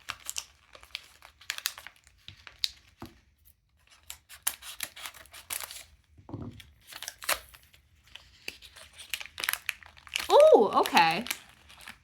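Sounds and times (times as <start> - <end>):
plastic packaging crinkling: 0.0 - 3.0, 6.6 - 12.0.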